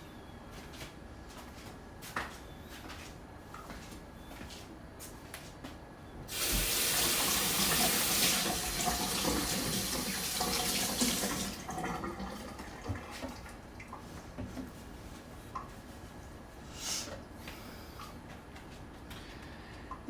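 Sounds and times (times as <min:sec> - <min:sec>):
kitchen tap running: 0:06.3 - 0:14.0.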